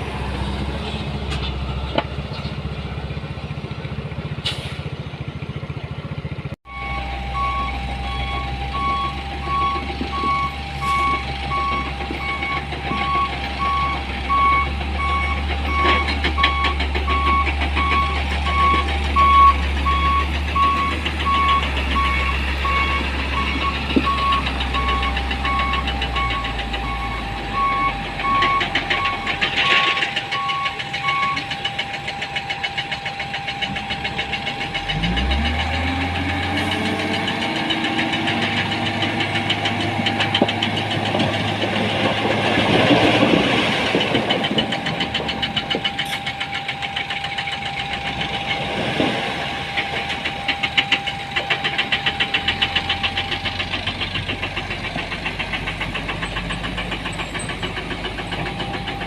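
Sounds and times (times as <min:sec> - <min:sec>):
truck engine rumbling: 0:00.0 - 0:59.0
reversing alarm beeping: 0:06.7 - 0:59.0.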